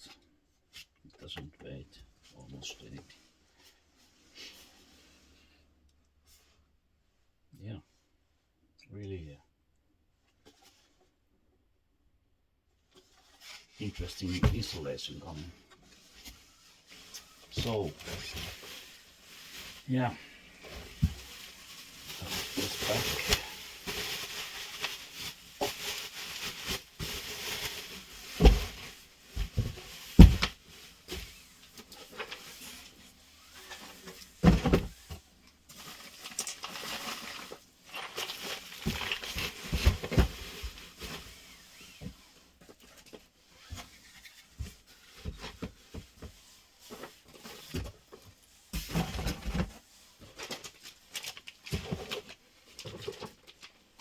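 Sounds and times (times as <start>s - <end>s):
boxes thumping down: 29.4s - 30.6s, 34.4s - 35.0s.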